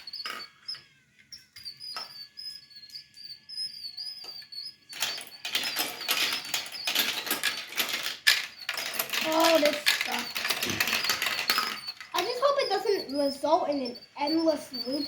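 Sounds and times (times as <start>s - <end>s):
marbles clattering on plastic track: 0.0s - 0.8s, 4.0s - 15.0s
faint high warbling whistle: 0.0s - 7.2s, 9.4s - 15.0s.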